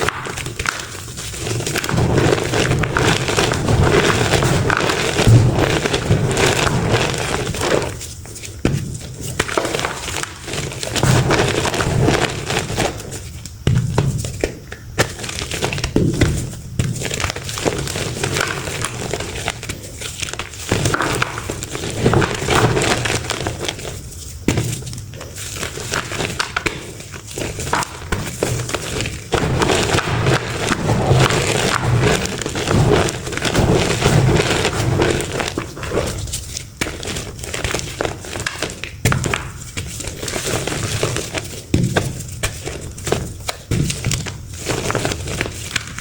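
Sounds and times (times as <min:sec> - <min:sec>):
chalk blocks crunching: 0:24.6 - 0:46.0.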